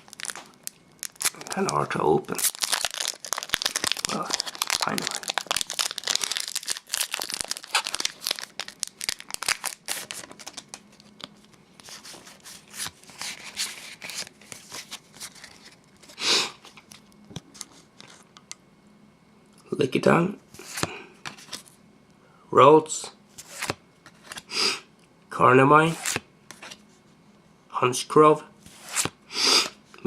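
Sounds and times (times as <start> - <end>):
foil wrapper crinkling: 0.0 - 12.1.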